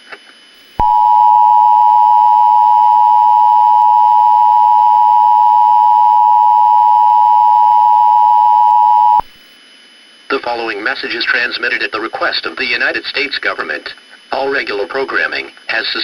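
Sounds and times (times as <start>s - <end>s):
two-tone emergency alert signal: 0.8s - 9.2s.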